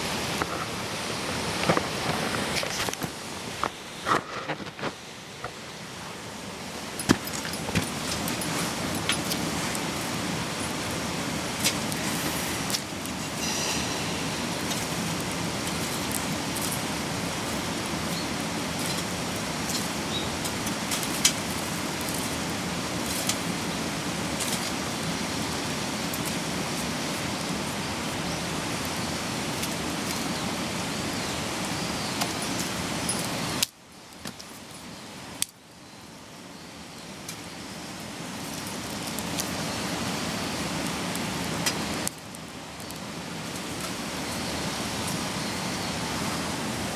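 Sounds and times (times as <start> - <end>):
mountain stream rushing: 0.0 - 46.9.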